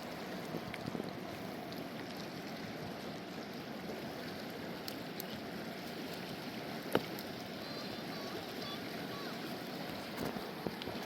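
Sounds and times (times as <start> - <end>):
mountain river rushing: 0.0 - 11.0.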